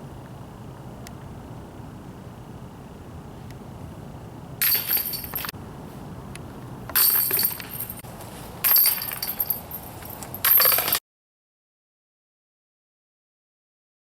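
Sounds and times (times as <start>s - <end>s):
chains jangling: 4.6s - 5.5s, 7.0s - 8.0s, 8.6s - 11.0s.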